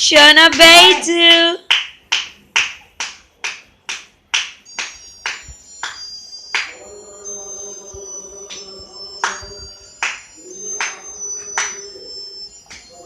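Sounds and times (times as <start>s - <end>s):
electronic music: 4.7s - 13.0s
held synth tones: 4.7s - 13.0s.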